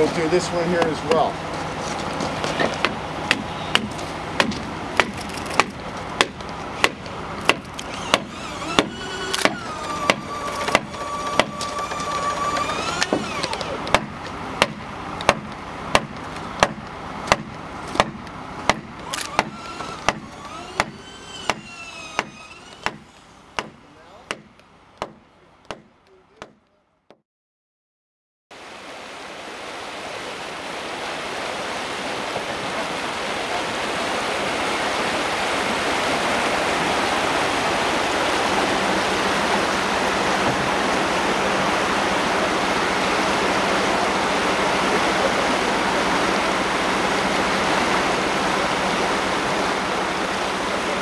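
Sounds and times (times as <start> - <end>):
mallet hammering on timber: 2.8 - 26.7
machine whine: 7.6 - 14.0, 19.0 - 24.1.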